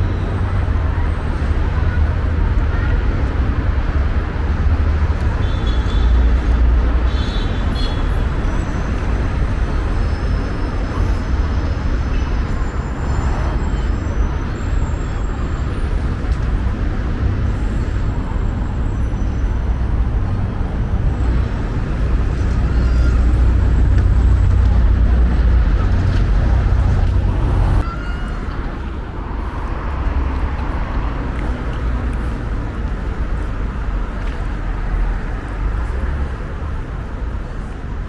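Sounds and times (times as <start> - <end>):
vehicles passing: 0.0 - 38.0
heavy low rumble: 16.6 - 27.8.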